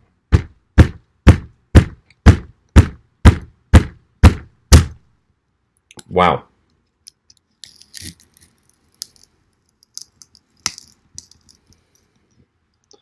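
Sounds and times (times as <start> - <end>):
hard objects clicking and clattering: 7.1 - 12.4.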